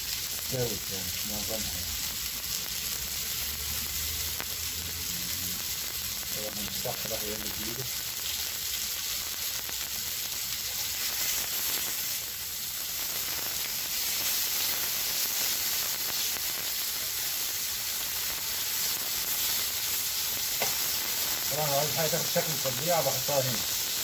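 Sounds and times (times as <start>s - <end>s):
chicken sizzling on a grill: 0.0s - 24.0s.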